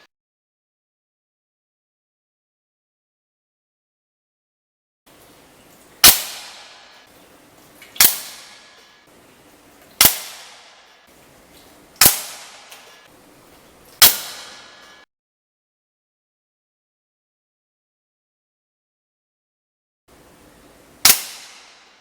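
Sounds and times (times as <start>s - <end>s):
air rifle shots: 6.0s - 7.0s, 8.0s - 8.9s, 10.0s - 11.1s, 12.0s - 13.1s, 14.0s - 15.0s, 21.0s - 22.0s.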